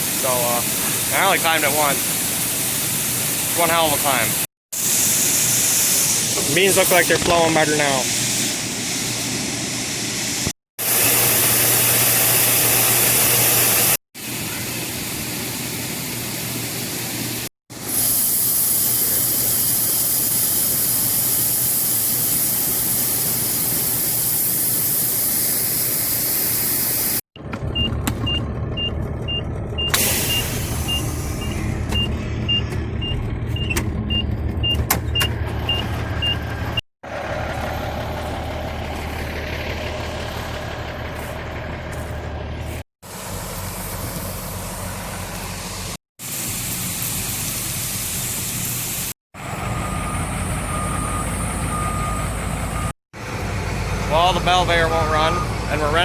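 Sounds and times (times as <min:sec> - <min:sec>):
loud rushing hiss: 0:00.0 - 0:27.2
diesel engine running: 0:27.4 - 0:46.0, 0:49.4 - 0:56.0
backup alarm beeping: 0:27.7 - 0:36.8, 0:49.4 - 0:52.9.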